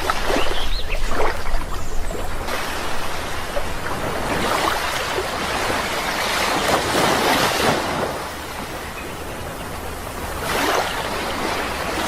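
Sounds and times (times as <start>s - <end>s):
wave breaking: 2.4s - 9.0s, 9.8s - 12.0s.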